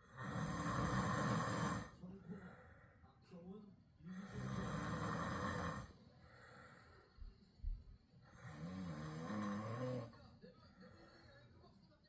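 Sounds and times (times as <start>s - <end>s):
person snoring loudly: 0.0s - 2.0s, 4.2s - 5.9s, 8.4s - 10.1s.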